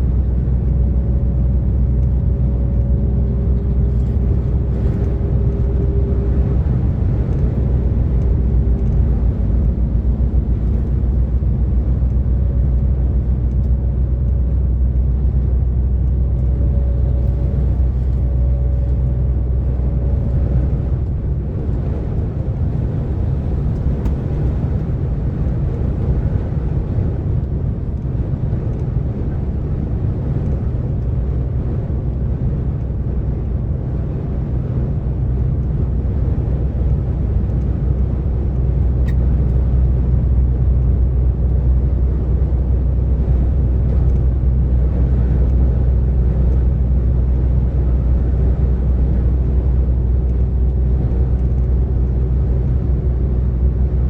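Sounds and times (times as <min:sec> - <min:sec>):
lorry diesel engine running: 0:00.0 - 0:54.0
road noise: 0:00.0 - 0:54.0.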